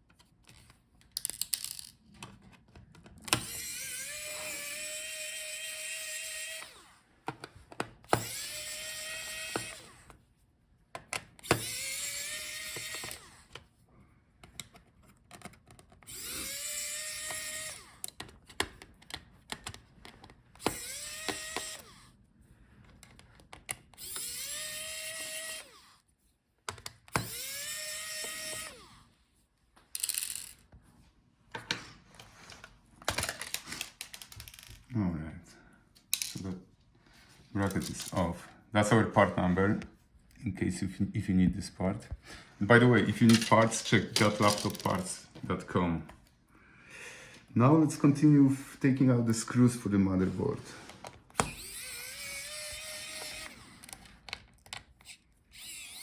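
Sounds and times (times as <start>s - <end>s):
clicks and taps of screws: 1.0s - 2.3s
power screwdriver whine: 3.3s - 7.0s, 8.1s - 10.1s, 11.4s - 13.5s, 16.1s - 18.1s, 20.6s - 22.1s, 24.0s - 26.0s, 27.1s - 29.1s, 51.3s - 54.2s, 55.0s - 56.0s.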